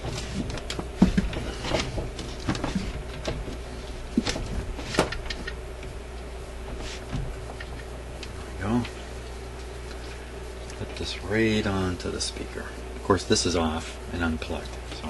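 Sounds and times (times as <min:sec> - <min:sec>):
clips and wires clicking: 0:00.0 - 0:06.3.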